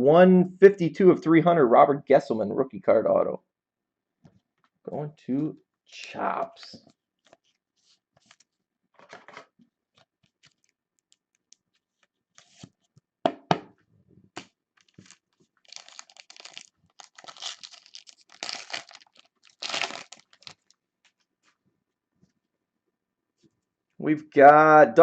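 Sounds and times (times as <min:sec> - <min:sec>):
packaging crinkling: 0:10.0 - 0:12.6, 0:14.8 - 0:21.2
card packaging tearing: 0:14.8 - 0:20.7.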